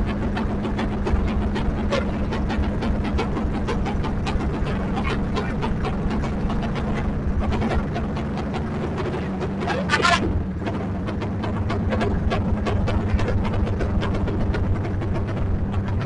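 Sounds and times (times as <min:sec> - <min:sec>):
exhaust crackles: 0:00.0 - 0:16.0
motorcycle engine drone: 0:00.0 - 0:16.0.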